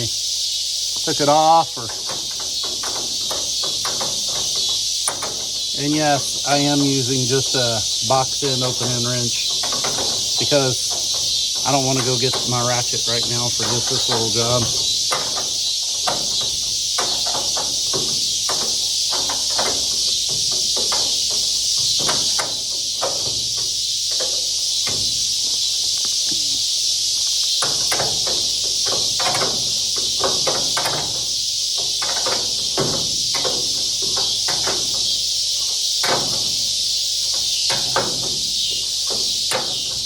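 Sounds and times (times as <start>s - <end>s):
high insect chorus: 0.0s - 40.0s
wrench clicking on bolts: 1.0s - 26.3s.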